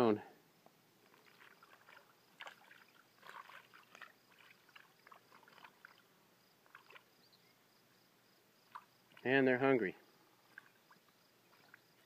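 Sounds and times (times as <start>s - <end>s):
fish splashing in water: 1.1s - 7.1s.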